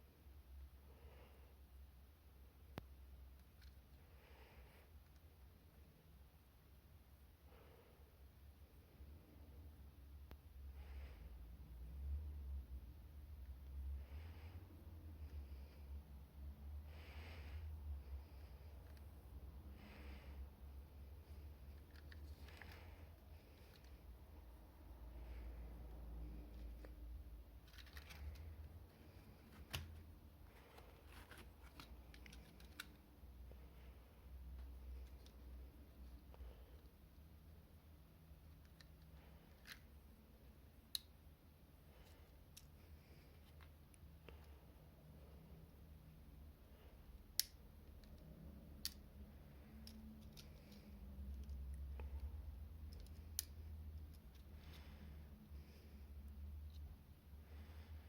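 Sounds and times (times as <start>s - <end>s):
plastic parts clicking and rustling: 3.3s - 4.0s, 21.2s - 24.1s, 27.6s - 33.6s, 38.3s - 40.1s, 47.2s - 55.0s.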